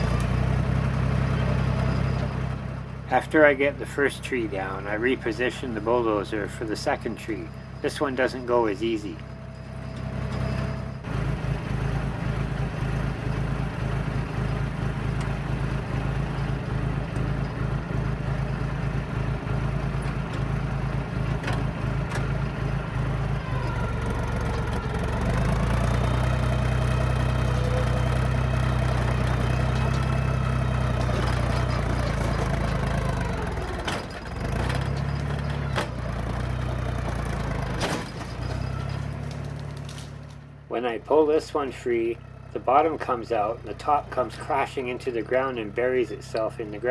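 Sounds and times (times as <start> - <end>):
bulldozer diesel engine labouring: 0.0 - 46.9.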